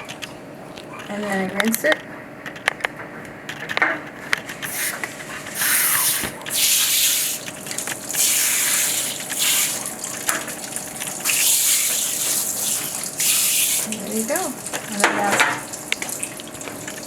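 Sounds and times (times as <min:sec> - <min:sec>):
running water splashing: 0:04.7 - 0:17.0.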